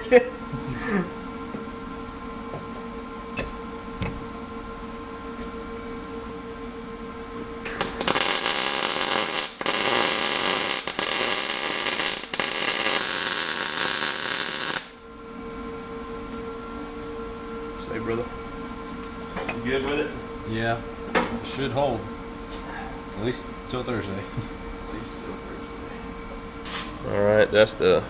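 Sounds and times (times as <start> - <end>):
welder electrical hum: 0.0 - 28.0
welding arc crackle: 7.6 - 15.0.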